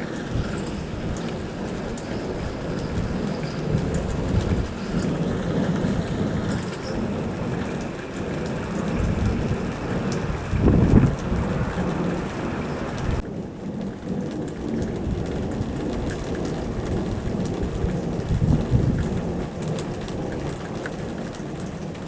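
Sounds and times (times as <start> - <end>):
distant steam release rumbling: 0.0 - 13.2.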